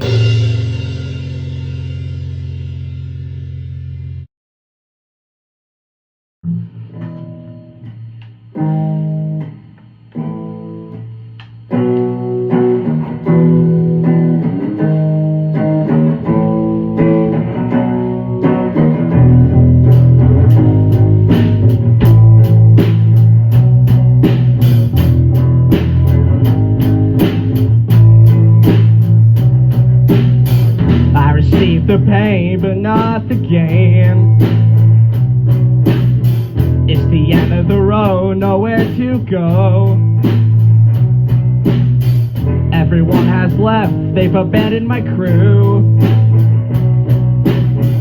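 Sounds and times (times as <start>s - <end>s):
drums and cymbals beat: 0.0s - 3.2s, 18.4s - 48.0s
bass guitar playing: 0.0s - 4.3s, 6.4s - 48.0s
electric guitar chords: 0.0s - 4.3s, 6.4s - 48.0s.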